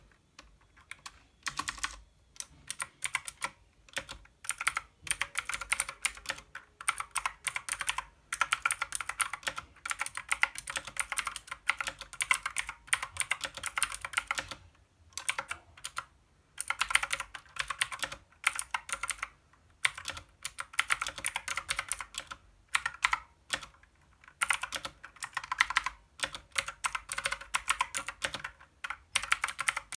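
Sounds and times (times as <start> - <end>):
clicky mechanical keyboard typing: 0.1 - 30.0.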